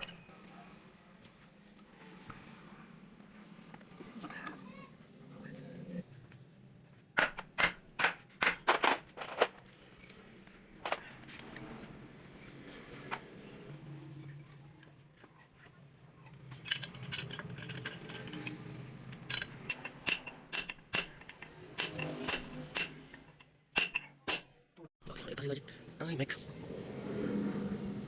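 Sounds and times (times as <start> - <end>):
metal tools clinking: 0.0 - 0.3, 8.7 - 11.6, 16.4 - 24.5.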